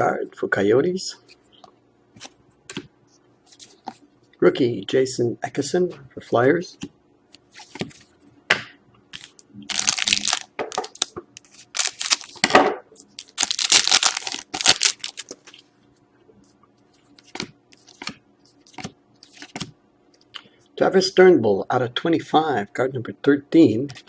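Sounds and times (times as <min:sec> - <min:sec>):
foil wrapper tearing and crinkling: 0:09.2 - 0:12.4, 0:13.2 - 0:15.3
cards being handled: 0:09.2 - 0:12.5, 0:13.2 - 0:15.6, 0:17.2 - 0:19.7.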